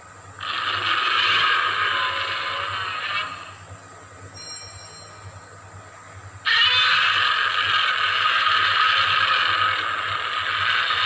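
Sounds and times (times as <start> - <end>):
long grating monster roar: 0.4 - 3.6, 6.5 - 11.0.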